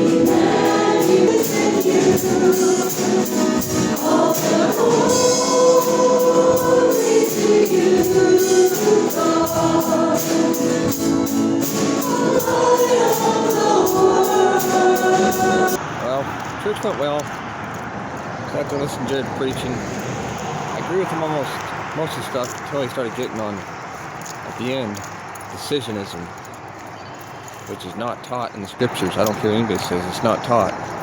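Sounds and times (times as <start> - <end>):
gospel choir singing: 0.0 - 15.8
steady beat: 0.0 - 15.8.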